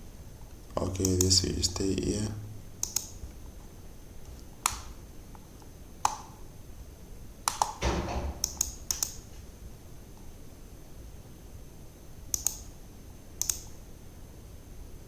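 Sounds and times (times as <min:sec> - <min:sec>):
computer mouse clicking: 0:01.0 - 0:01.4, 0:02.8 - 0:03.3, 0:04.3 - 0:05.0, 0:06.0 - 0:06.4, 0:07.4 - 0:07.8, 0:08.4 - 0:09.3, 0:12.3 - 0:12.7, 0:13.4 - 0:13.8.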